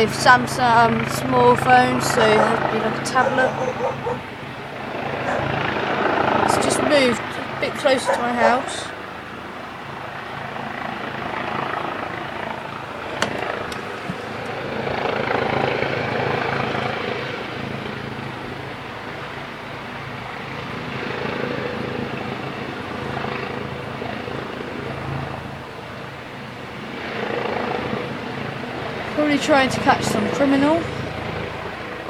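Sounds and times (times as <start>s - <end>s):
helicopter rotor and engine: 0.0s - 32.0s.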